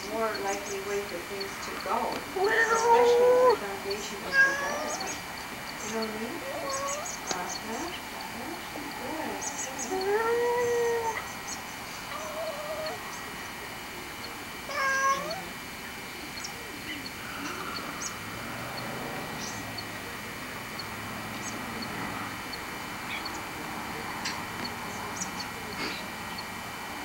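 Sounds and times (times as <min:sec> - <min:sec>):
cat meowing: 0:02.4 - 0:05.2, 0:05.9 - 0:07.6, 0:09.8 - 0:11.2, 0:14.7 - 0:15.5.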